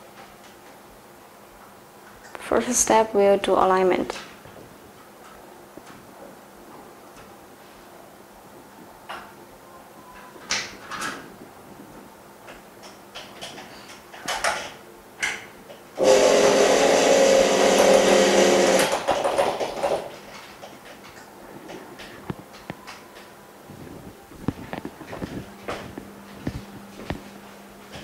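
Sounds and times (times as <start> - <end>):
parts clicking and knocking: 12.5 - 15.8
laminating machine running: 16.0 - 20.2.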